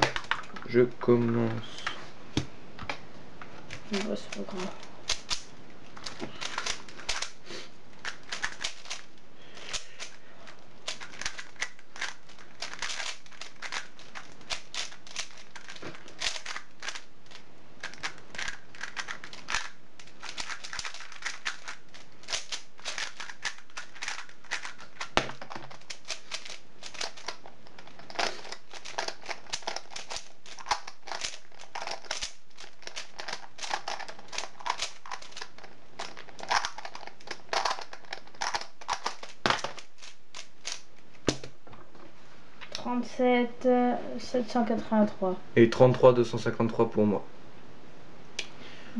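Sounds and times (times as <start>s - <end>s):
puzzle cube clicking and rattling: 0.0s - 1.9s, 3.6s - 41.6s.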